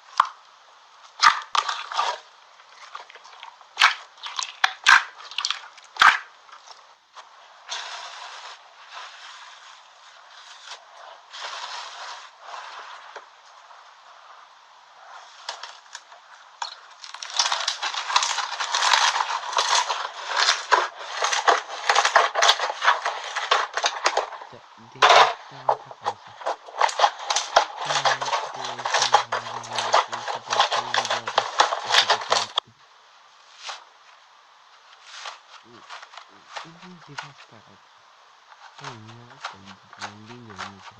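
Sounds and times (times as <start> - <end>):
slime crackling and popping: 15.5 - 24.2.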